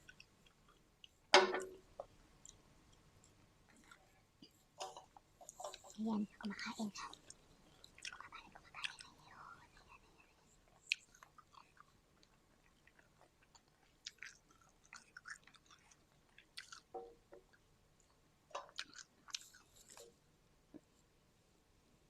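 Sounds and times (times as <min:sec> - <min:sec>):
people chewing: 0:02.4 - 0:04.2, 0:04.8 - 0:16.9, 0:18.0 - 0:20.1.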